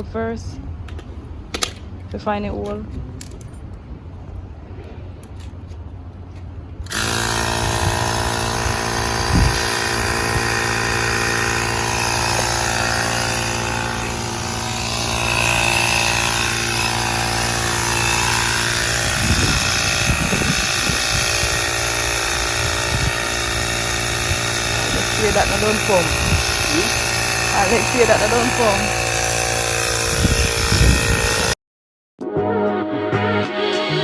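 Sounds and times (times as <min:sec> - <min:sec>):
tyre inflator humming: 0:06.9 - 0:31.6.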